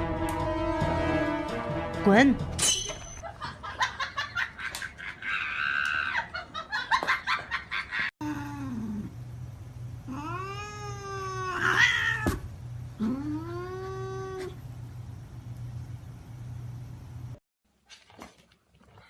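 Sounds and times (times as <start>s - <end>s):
low steady hum: 8.2s - 17.4s
cat yowling: 10.1s - 12.4s.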